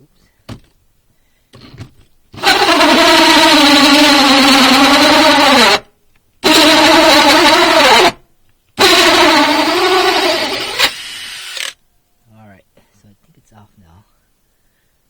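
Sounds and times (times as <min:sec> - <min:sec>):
cordless drill whining: 0:02.4 - 0:05.8, 0:06.4 - 0:08.2, 0:08.8 - 0:11.8.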